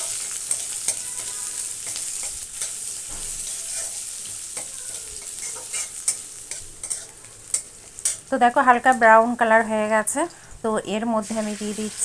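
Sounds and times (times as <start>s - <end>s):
spatula scraping a pan: 0.0s - 8.3s
onions sizzling in oil: 0.0s - 12.0s.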